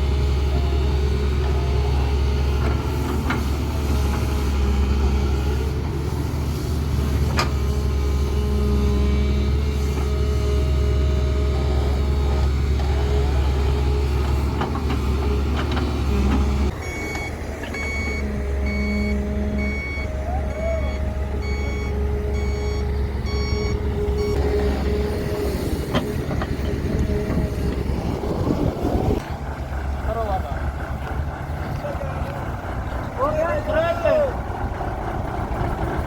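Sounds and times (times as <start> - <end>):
diesel engines running: 0.0 - 36.0
reversing alarm beeping: 16.7 - 25.5.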